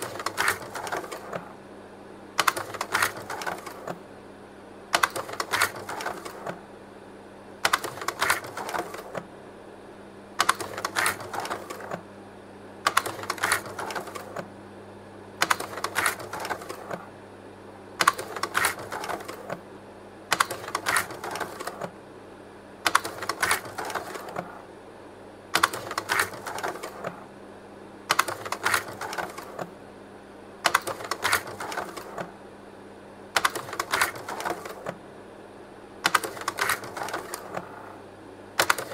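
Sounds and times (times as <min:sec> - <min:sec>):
projector fan hum: 0:00.0 - 0:38.9
slide projector clicking and sliding: 0:07.7 - 0:09.2, 0:18.0 - 0:19.6, 0:30.7 - 0:32.3, 0:33.4 - 0:35.0, 0:36.1 - 0:37.7.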